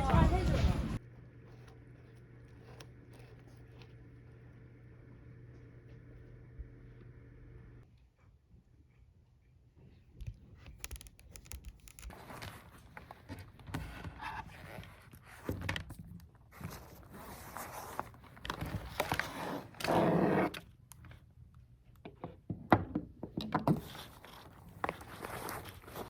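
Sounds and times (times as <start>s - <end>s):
handling scrapes and knocks: 0.2s - 4.5s, 23.3s - 26.0s.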